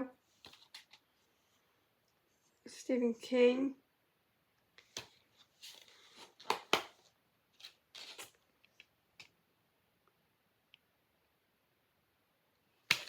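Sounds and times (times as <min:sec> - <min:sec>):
plastic disc case clicks: 0:06.4 - 0:07.0
plastic cases rustling scrapes: 0:07.6 - 0:08.4.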